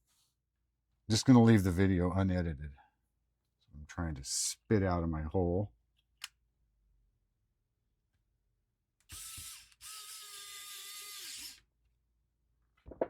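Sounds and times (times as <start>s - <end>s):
electric screwdriver whining: 9.0s - 11.7s.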